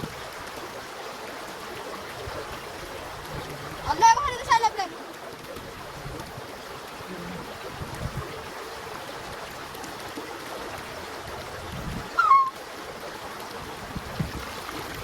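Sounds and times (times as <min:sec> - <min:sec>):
water rushing: 0:00.0 - 0:15.0
short sharp high call: 0:12.2 - 0:12.6.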